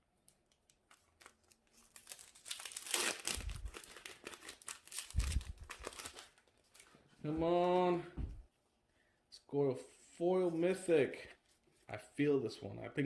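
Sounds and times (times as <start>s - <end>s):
foil wrapper crinkling and tearing: 0.3s - 6.9s
dull thumps on table: 8.2s - 8.4s.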